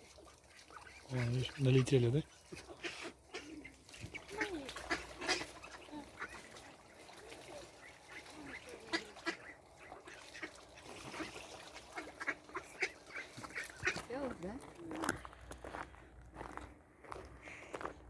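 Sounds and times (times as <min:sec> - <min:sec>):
ducks quacking: 0:00.5 - 0:14.3.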